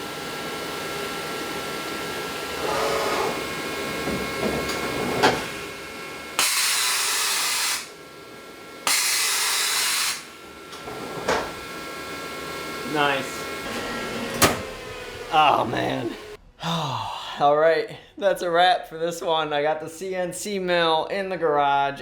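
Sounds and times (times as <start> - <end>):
steady machine whine: 0.0 - 16.4
machine clunk: 3.8 - 5.6, 10.7 - 11.6, 13.6 - 15.3
compressed air hiss: 6.4 - 8.0, 8.9 - 10.3.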